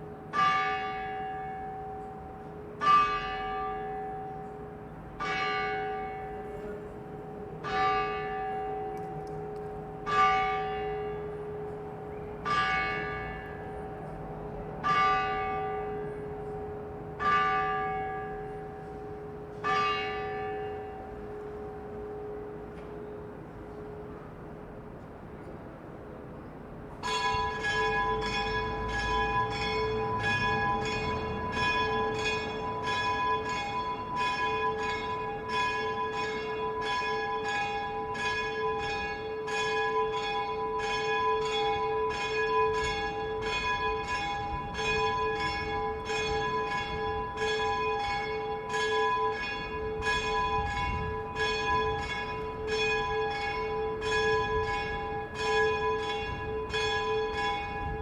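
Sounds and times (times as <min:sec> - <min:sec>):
church bell ringing: 0:00.0 - 0:25.6, 0:26.9 - 0:58.0.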